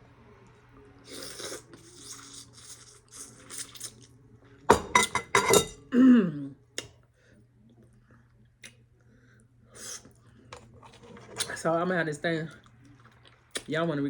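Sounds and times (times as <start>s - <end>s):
cutlery clinking on dishware: 4.7s - 5.8s.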